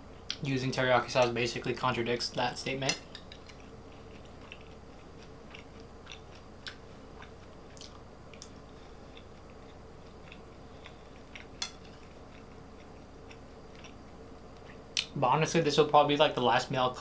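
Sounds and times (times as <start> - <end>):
person chewing food: 3.1 - 15.1.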